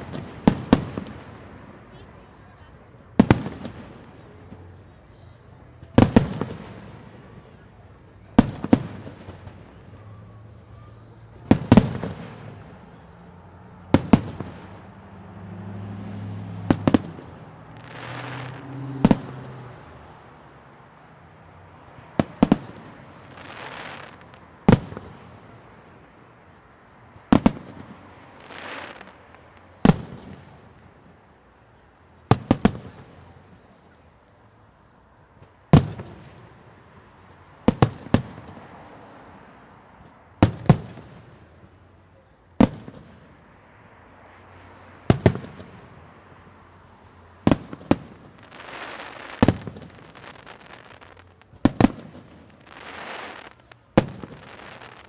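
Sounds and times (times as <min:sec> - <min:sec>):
firework hissing: 0:16.1 - 0:20.1, 0:22.2 - 0:25.1, 0:27.3 - 0:30.0, 0:48.3 - 0:55.0.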